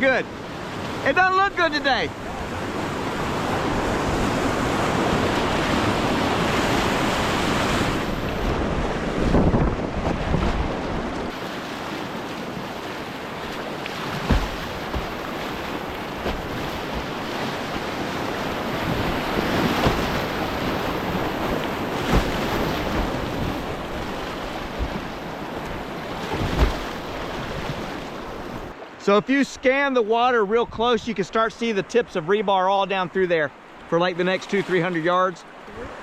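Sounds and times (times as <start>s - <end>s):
river rapid rushing: 0.0s - 29.3s.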